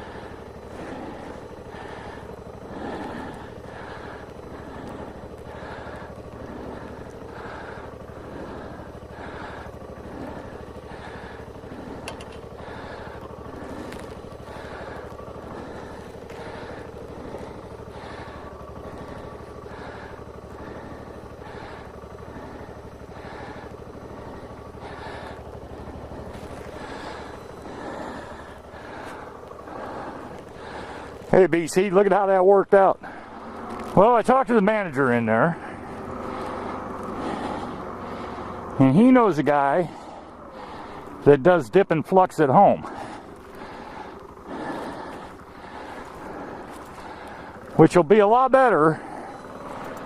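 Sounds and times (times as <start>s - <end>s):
car engine and road noise: 0.0s - 50.0s.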